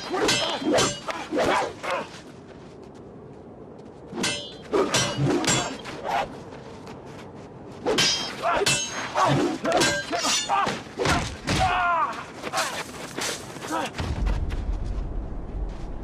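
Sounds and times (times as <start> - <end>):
metal blades clanging: 0.0 - 1.4, 4.2 - 5.9, 7.9 - 11.2.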